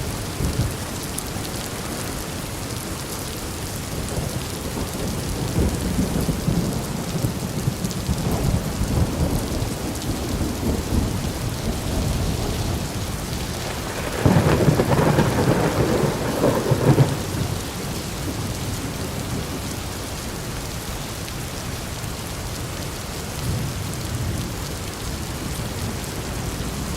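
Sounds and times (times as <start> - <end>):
steady rain: 0.0 - 26.9
thunder rumbling: 3.9 - 19.8
sharp thunderclap crackling: 4.8 - 18.6.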